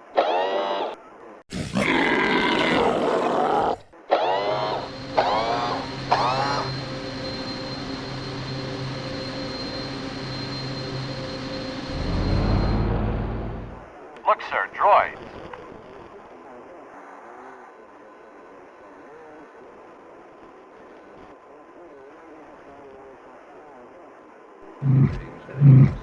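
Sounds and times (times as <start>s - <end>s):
creature-like growl: 1.5s - 3.9s, 24.7s - 26.0s
machine hum with high whine: 4.0s - 16.9s, 17.7s - 26.0s
deep rumble: 11.2s - 13.9s.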